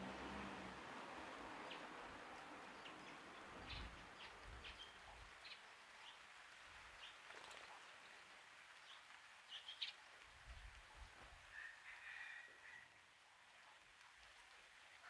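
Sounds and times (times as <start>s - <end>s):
small birds chirping: 2.6s - 6.2s, 8.8s - 10.0s.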